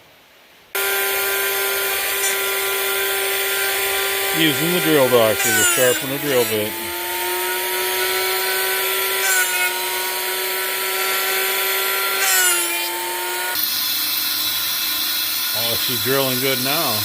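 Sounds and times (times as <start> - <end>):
electric motor whining: 0.8 - 17.0
grinding hiss: 0.8 - 17.0.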